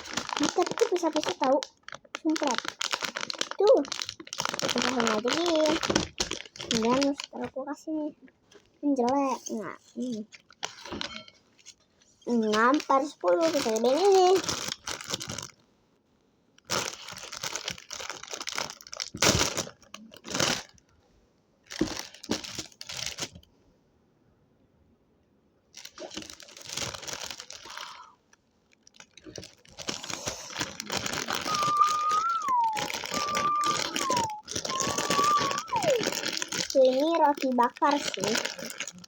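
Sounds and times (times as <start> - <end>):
food wrapper crinkling and tearing: 0.0 - 7.6, 8.6 - 15.6, 16.6 - 20.9, 21.7 - 23.5, 25.7 - 39.0
falling high tones: 31.5 - 36.0.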